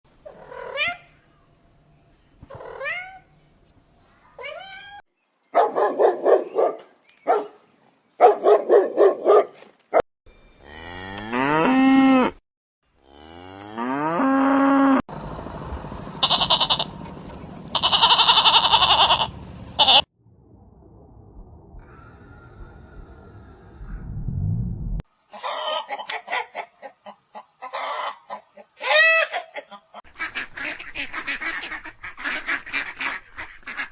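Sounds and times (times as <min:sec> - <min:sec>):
dog barking rapidly: 0:05.6 - 0:07.6, 0:08.2 - 0:09.6
buzzy rasping call: 0:16.2 - 0:16.9, 0:17.8 - 0:20.0
long descending animal calls: 0:17.8 - 0:20.0.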